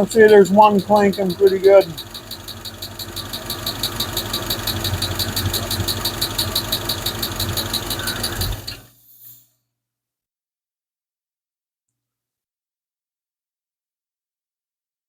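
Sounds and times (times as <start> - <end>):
engine idling with lifter tick: 0.0 - 8.9.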